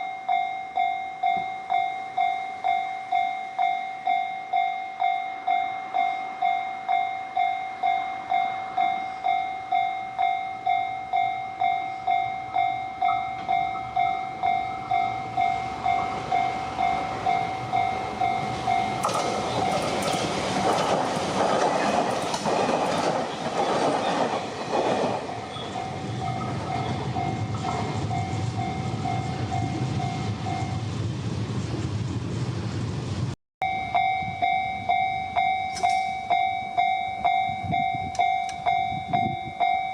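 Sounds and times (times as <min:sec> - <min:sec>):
level-crossing warning bell: 0:00.0 - 0:30.9, 0:33.6 - 0:39.9
train wheels clattering: 0:13.0 - 0:30.8, 0:35.6 - 0:36.5.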